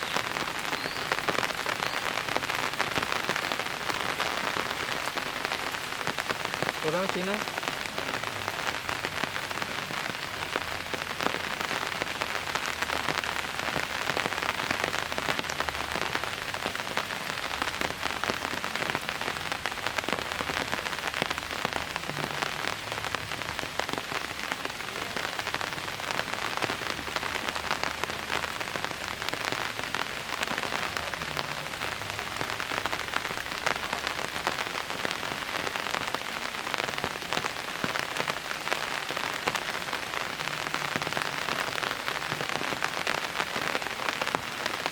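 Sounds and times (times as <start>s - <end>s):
steady rain falling: 0.0s - 44.9s.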